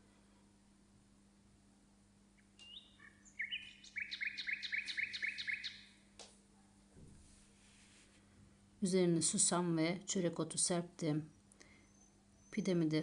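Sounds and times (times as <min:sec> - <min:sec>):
faint steady hum: 0:00.0 - 0:13.0
songbird chirping and trilling: 0:02.4 - 0:06.0, 0:11.2 - 0:12.9.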